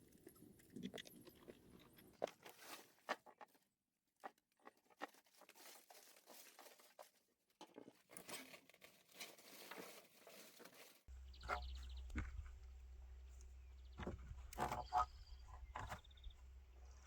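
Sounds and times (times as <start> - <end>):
dry material crackling and rustling: 2.2 - 17.0
steady low hum: 11.1 - 17.0.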